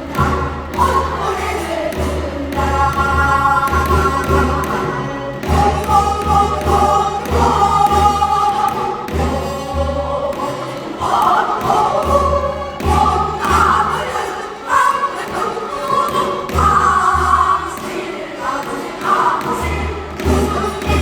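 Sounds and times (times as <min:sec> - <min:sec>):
folk singing voices: 0:00.0 - 0:21.0
low drum beat: 0:20.6 - 0:21.0.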